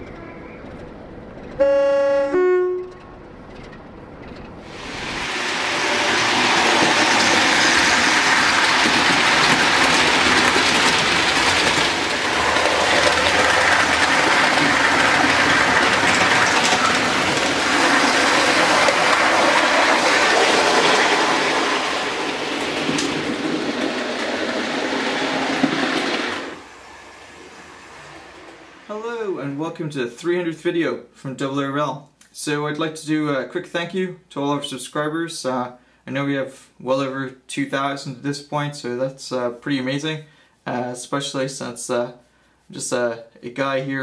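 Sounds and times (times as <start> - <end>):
train running noise: 0.0 - 29.5
two-tone train horn: 1.6 - 3.0.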